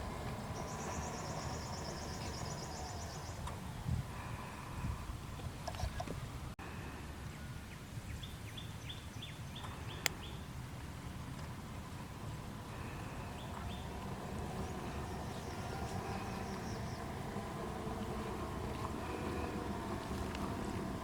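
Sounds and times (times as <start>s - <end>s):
bird chirping: 0.1s - 3.5s, 7.3s - 10.5s, 12.8s - 19.7s
steady low rumble: 10.6s - 21.0s.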